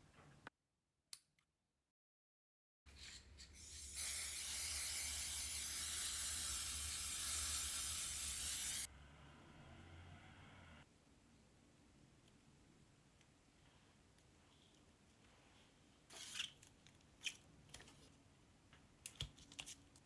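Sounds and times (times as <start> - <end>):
loud hiss of air or spray: 3.6 - 8.9.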